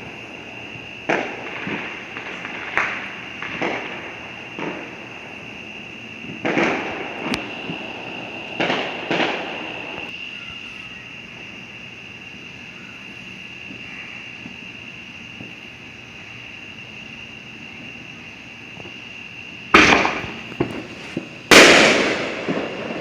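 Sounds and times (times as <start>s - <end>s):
fireworks bangs and booms: 0.0s - 10.1s, 13.6s - 15.9s, 19.7s - 23.0s.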